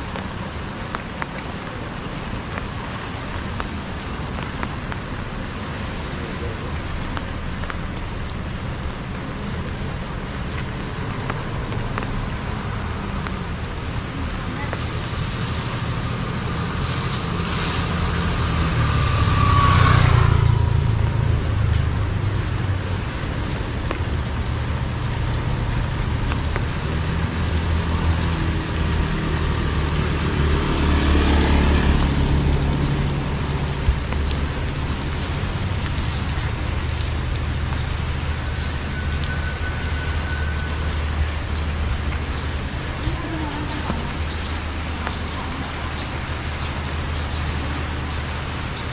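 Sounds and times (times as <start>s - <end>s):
steady low traffic rumble: 0.0s - 48.9s
vehicle passing by: 14.9s - 23.2s, 24.4s - 37.6s.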